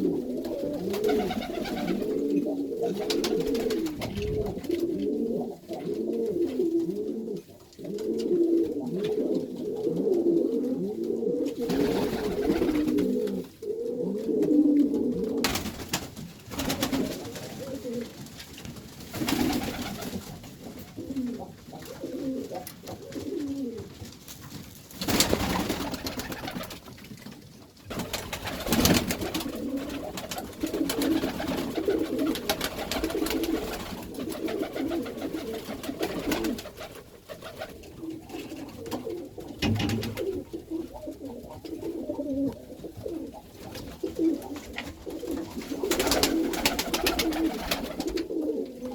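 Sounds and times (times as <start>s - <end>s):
pigeons cooing: 0.0s - 15.9s, 16.5s - 18.1s, 19.1s - 24.0s, 27.9s - 48.9s
rustling: 15.4s - 48.3s.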